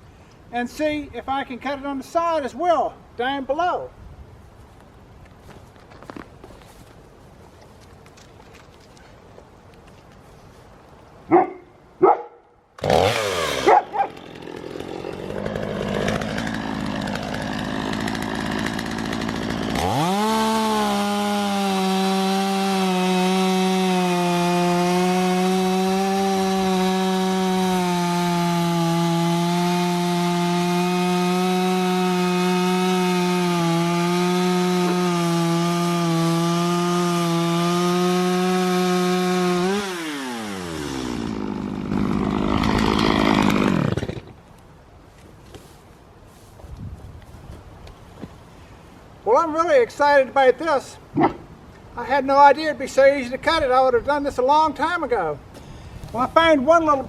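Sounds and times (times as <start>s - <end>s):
dog barking: 11.3s - 12.4s, 13.6s - 14.1s
chainsaw cutting hay bale: 12.8s - 44.4s.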